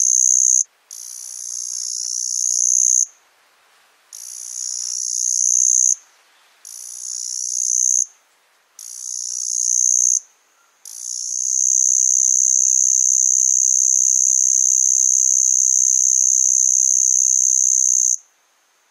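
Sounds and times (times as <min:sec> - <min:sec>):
cicada buzzing: 0:00.0 - 0:03.1, 0:04.1 - 0:06.0, 0:06.6 - 0:08.1, 0:08.8 - 0:10.2, 0:10.8 - 0:18.2.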